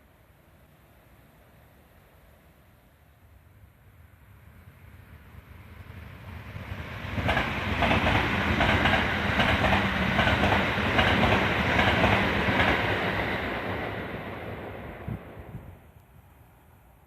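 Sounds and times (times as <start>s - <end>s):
train rumble and hum: 3.5s - 15.9s
train wheels clacking over joints: 7.2s - 12.9s.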